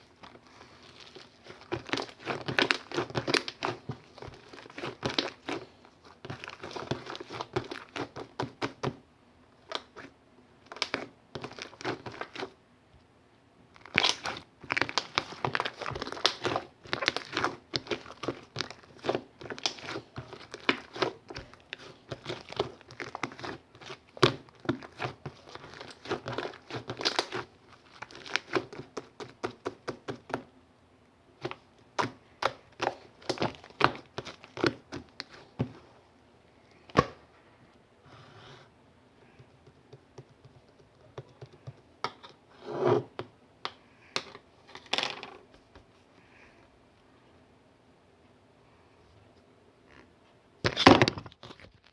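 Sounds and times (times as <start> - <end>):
crinkling and crackling: 0.0 - 9.0, 9.6 - 12.6, 13.7 - 30.4, 31.4 - 37.2, 49.3 - 51.9.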